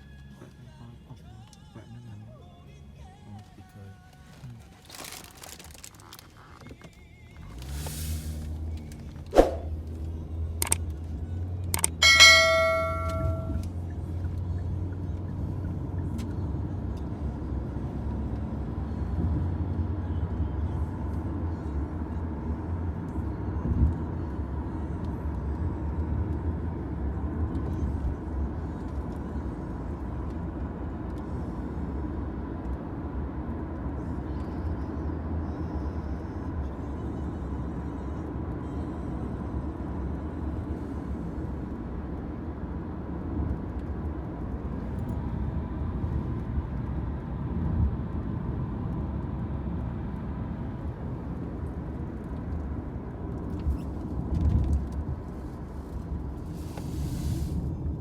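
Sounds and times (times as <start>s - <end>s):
car engine and road rumble: 0.0s - 58.0s
electronic chime: 12.0s - 13.6s.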